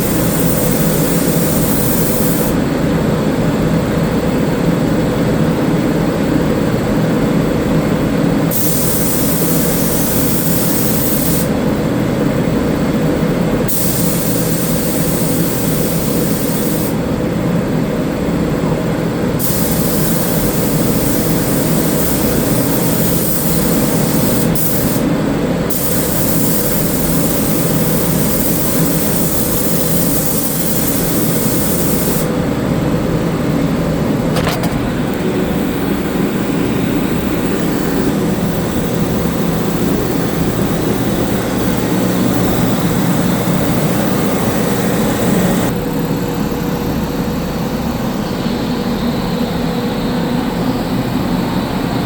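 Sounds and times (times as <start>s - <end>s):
paint spray gun hissing: 0.0s - 2.6s, 8.5s - 11.6s, 13.7s - 17.0s, 19.4s - 25.1s, 25.7s - 32.4s, 34.3s - 45.8s
low mechanical drone: 32.3s - 52.0s.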